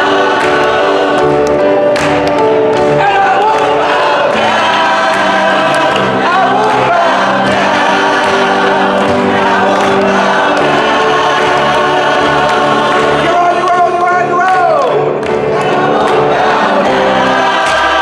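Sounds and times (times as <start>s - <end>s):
choir singing gospel song: 0.0s - 18.0s.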